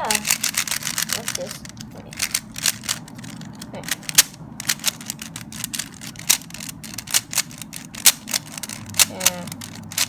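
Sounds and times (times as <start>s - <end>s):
puzzle cube layers clacking: 0.0s - 10.0s.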